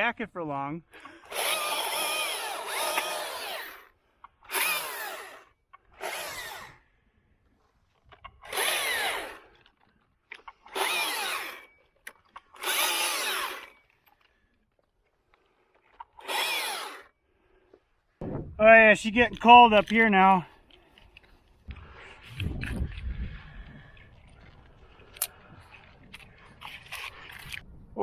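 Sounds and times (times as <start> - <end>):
rope whirring through hardware: 1.2 - 6.8, 8.4 - 9.6, 10.6 - 11.8, 12.5 - 13.8, 16.0 - 17.1.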